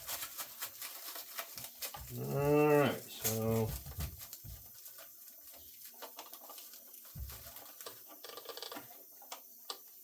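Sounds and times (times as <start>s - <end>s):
plastic packaging crinkling: 0.0s - 8.9s.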